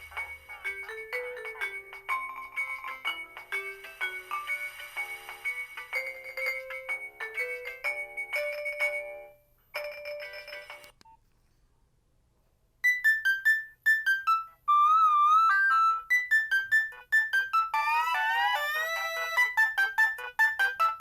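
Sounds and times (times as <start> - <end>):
chiming ringtone melody: 0.0 - 11.0, 12.8 - 21.0
beeping ringtone with warbling note: 12.8 - 21.0.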